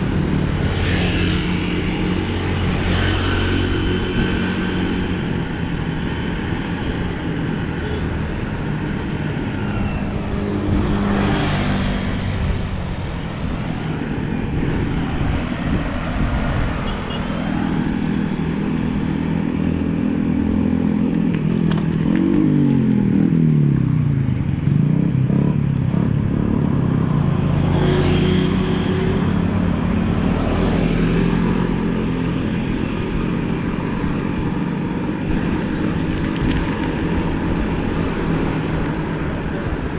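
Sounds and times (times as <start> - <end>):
vehicles passing on road: 0.0 - 39.9.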